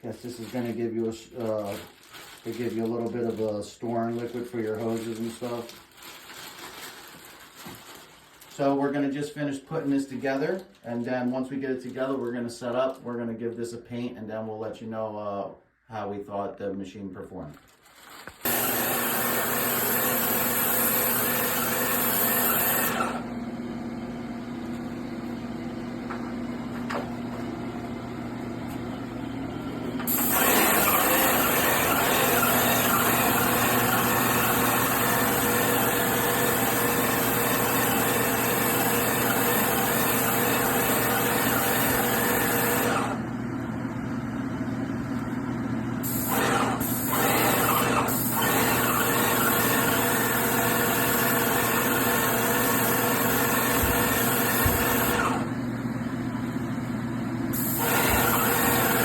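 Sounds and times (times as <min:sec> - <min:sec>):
paint sprayer hissing: 0:18.4 - 0:23.2, 0:30.0 - 0:43.1, 0:46.0 - 0:55.6, 0:57.5 - 0:59.0
electric pump humming: 0:18.4 - 0:59.0.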